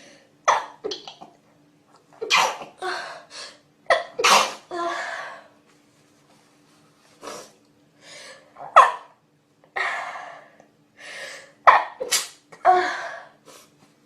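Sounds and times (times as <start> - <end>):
person sneezing: 2.2 - 2.8, 3.9 - 4.7, 11.7 - 13.0.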